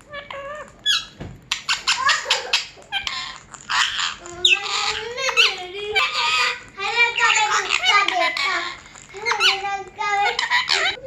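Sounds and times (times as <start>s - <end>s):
parrot squawking: 0.0s - 11.0s.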